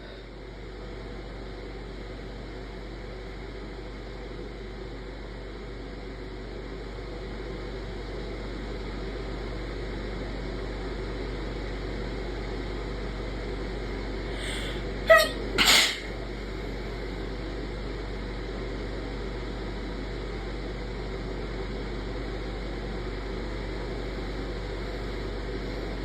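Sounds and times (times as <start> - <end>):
quick breath in: 14.3 - 14.8
person sneezing: 14.4 - 16.1.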